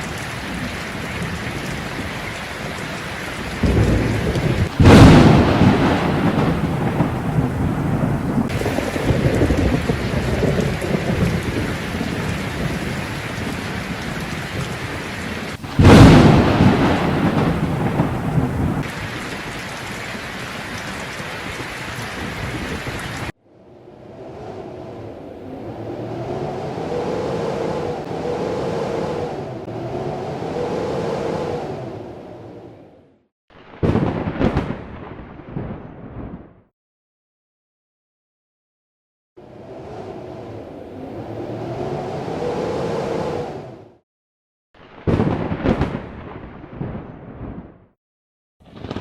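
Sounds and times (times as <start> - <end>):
thunderclaps rumbling: 0.0 - 23.3, 33.6 - 36.6, 44.8 - 47.8, 48.7 - 49.0
heavy rain pouring: 0.0 - 23.4.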